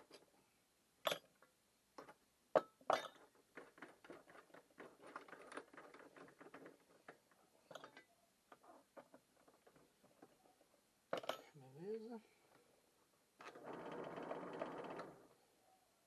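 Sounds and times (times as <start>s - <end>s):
light clicks and scratching: 3.2s - 11.7s.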